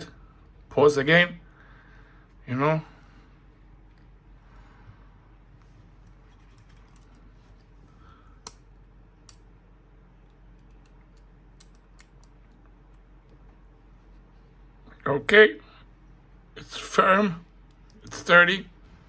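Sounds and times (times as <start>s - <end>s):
multitool clicks and taps: 10.5s - 13.0s.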